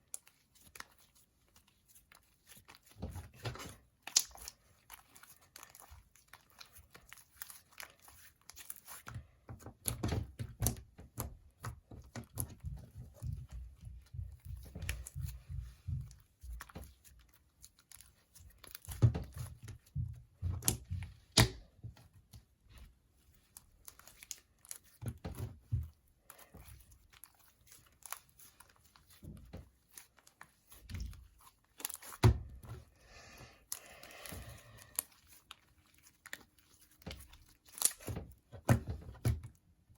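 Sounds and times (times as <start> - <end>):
hands squishing slime: 0.0 - 39.9
sticky slime pops and crackles: 3.4 - 4.6.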